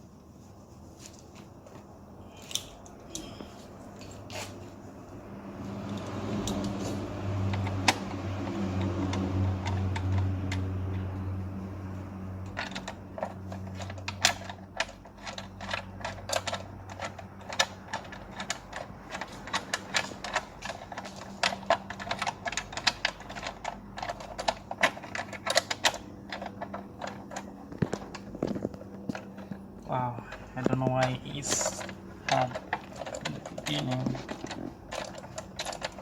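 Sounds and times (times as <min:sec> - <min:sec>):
steady low hum: 0:00.0 - 0:36.0
clicking and tapping on engine parts: 0:05.6 - 0:36.0.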